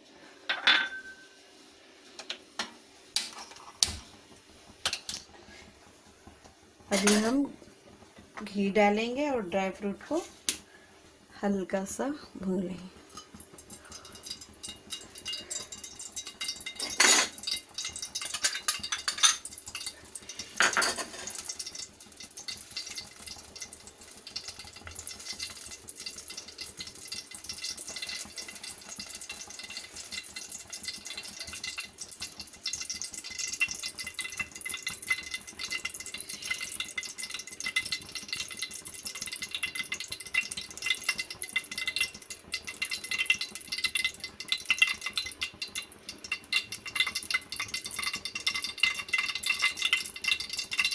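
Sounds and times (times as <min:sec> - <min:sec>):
pan clattering: 0:00.5 - 0:01.3, 0:13.9 - 0:23.7
ghee crackling in a pan: 0:03.1 - 0:50.9.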